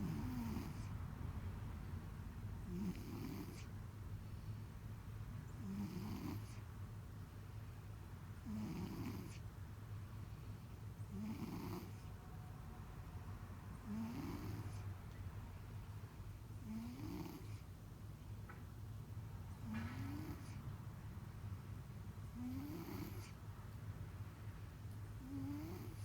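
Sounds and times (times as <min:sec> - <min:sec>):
pet snoring through nose: 0:00.0 - 0:00.9, 0:02.7 - 0:03.7, 0:05.6 - 0:06.6, 0:08.4 - 0:09.4, 0:11.1 - 0:12.0, 0:13.8 - 0:14.8, 0:16.6 - 0:17.6, 0:19.6 - 0:20.6, 0:22.4 - 0:23.4, 0:25.2 - 0:26.0.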